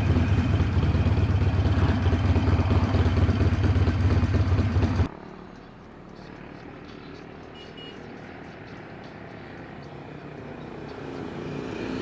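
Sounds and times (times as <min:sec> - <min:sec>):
motorcycle engine running: 0:00.0 - 0:05.1
road noise: 0:00.0 - 0:12.0.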